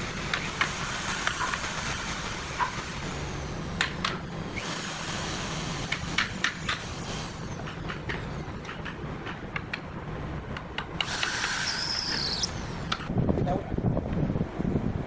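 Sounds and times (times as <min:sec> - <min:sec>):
sharp clicks and knocks: 0:03.7 - 0:04.7, 0:05.8 - 0:09.9, 0:10.5 - 0:13.1.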